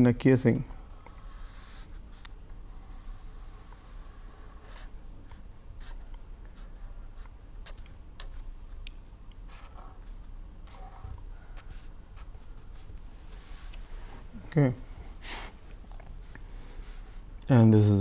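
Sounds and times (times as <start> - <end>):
steady low hum: 0.0 - 18.0
pen scratching on paper: 1.2 - 7.9.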